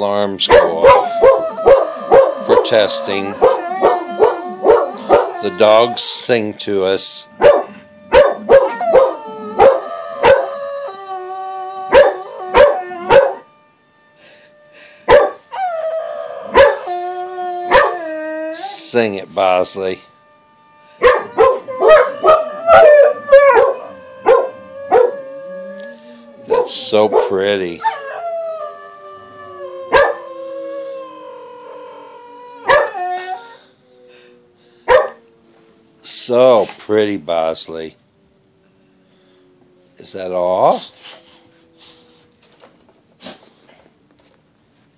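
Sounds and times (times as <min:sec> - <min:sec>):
alarm blasts and steady tone: 0:00.0 - 0:43.0
dog howling: 0:00.2 - 0:13.5, 0:15.1 - 0:20.0, 0:21.0 - 0:35.4
dog yelping: 0:00.5 - 0:06.0, 0:07.4 - 0:10.6, 0:11.9 - 0:13.4, 0:17.7 - 0:18.8, 0:21.0 - 0:28.2, 0:29.9 - 0:30.2, 0:32.6 - 0:33.3.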